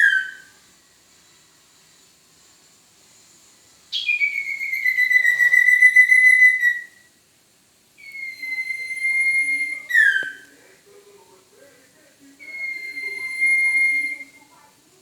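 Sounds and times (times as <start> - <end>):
long clear whistles: 0.0 - 0.6, 3.9 - 7.2, 8.0 - 10.5, 12.4 - 14.6.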